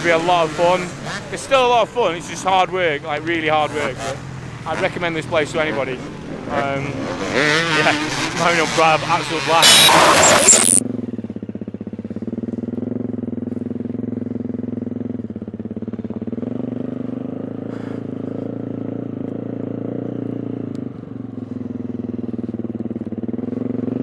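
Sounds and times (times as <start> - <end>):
dirt bike engine idling: 0.0 - 9.6, 10.8 - 24.0.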